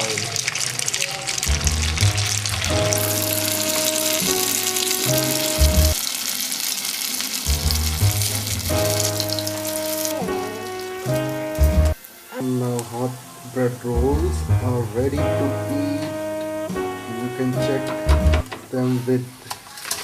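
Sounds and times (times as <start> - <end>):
food sizzling in hot oil: 0.0 - 14.6
background music: 1.4 - 6.0, 7.5 - 19.4.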